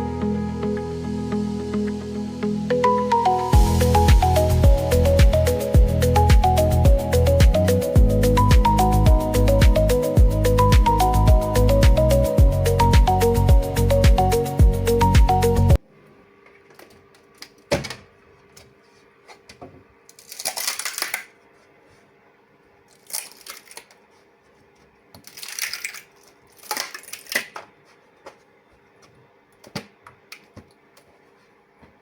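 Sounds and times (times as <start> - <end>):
background music: 0.0 - 15.8.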